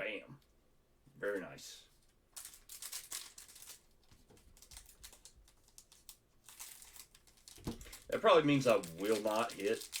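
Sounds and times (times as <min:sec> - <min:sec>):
trading cards clicking and rustling: 0:02.4 - 0:10.0.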